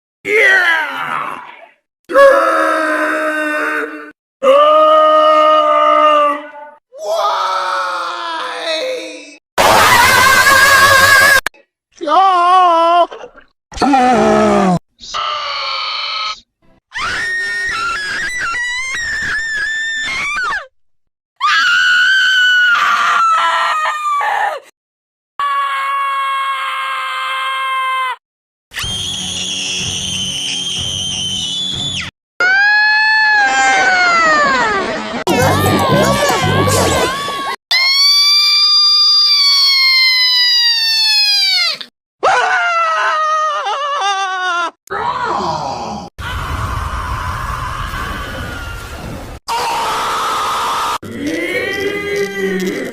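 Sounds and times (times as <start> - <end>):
cartoon screaming: 7.0 - 11.5, 13.8 - 20.7, 32.4 - 48.9, 49.5 - 52.9
cartoon screaming sound effect: 32.4 - 43.2.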